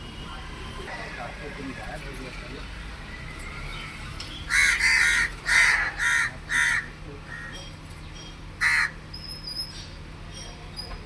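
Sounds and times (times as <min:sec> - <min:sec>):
crow cawing: 0:04.5 - 0:07.6, 0:08.6 - 0:09.0.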